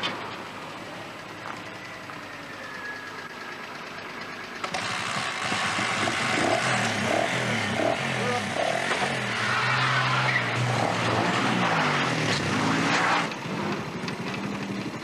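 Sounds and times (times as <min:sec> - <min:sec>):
motorbike engine revving: 0:04.5 - 0:15.0.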